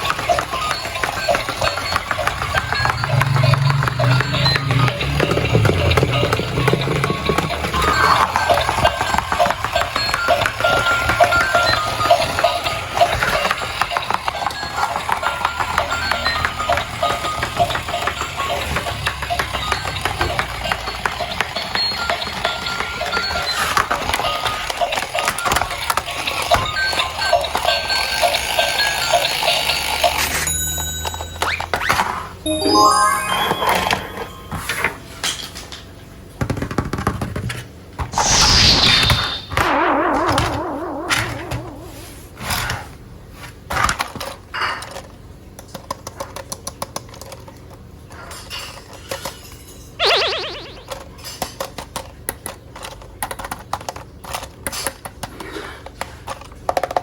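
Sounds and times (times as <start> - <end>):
plastic toys clicking and knocking: 0.0 - 33.4, 36.4 - 38.2, 43.7 - 57.0
warbling electronic toy sound: 32.5 - 34.4, 38.2 - 42.2, 50.0 - 51.1
bell-like electronic music: 32.5 - 34.8.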